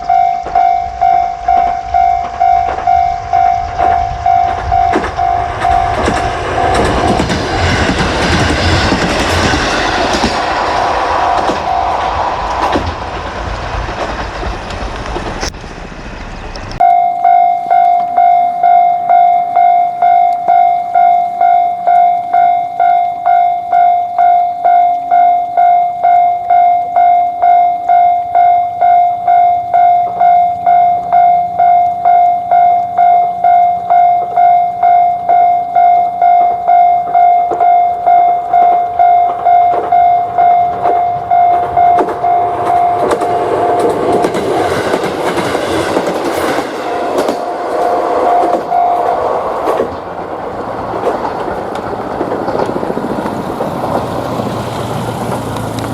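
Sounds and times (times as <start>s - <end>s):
level crossing warning bell: 0.0s - 9.6s, 16.8s - 49.6s
passing train rumble: 0.0s - 55.9s.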